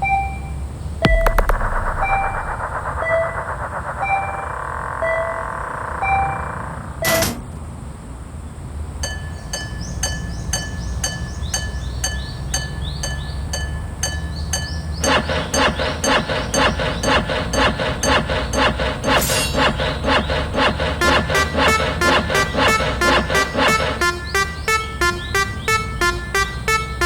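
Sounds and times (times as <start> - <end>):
steady low hum: 1.0 - 5.4, 15.0 - 27.0
short burst: 1.1 - 4.8, 15.0 - 27.0.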